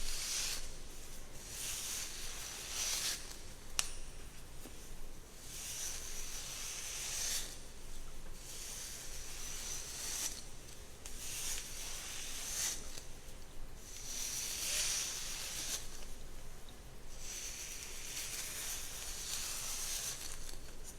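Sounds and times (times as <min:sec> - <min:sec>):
hairbrush strokes through hair: 0:00.0 - 0:20.9.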